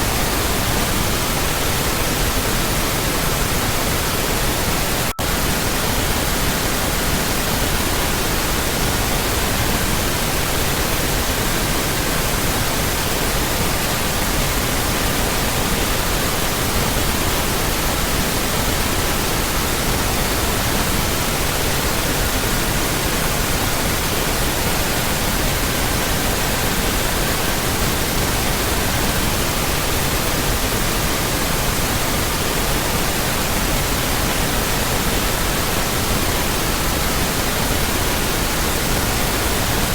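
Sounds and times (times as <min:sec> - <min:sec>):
pink noise: 0:00.0 - 0:39.9.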